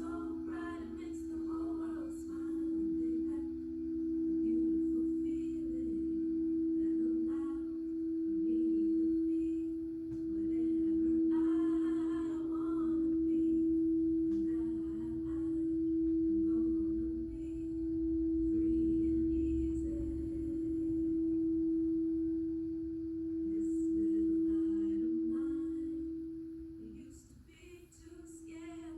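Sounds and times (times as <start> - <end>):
faint wavering high tones: 0.0 - 28.9
singing bowl ringing: 0.0 - 28.9.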